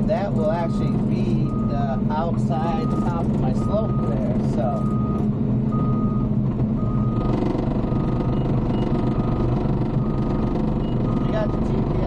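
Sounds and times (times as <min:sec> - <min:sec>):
bulldozer diesel engine: 0:00.0 - 0:12.0
reversing alarm beeping: 0:00.5 - 0:02.0, 0:02.6 - 0:11.8.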